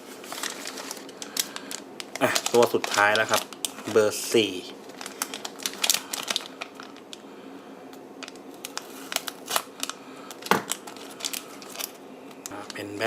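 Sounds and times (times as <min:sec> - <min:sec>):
plastic packet crinkling: 0:00.0 - 0:07.2, 0:08.2 - 0:13.0.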